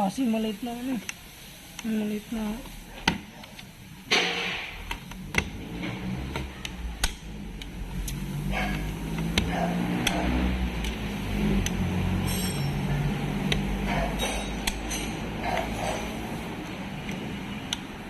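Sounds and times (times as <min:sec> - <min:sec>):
hand tools clinking on metal: 0:12.1 - 0:13.1, 0:13.9 - 0:16.4.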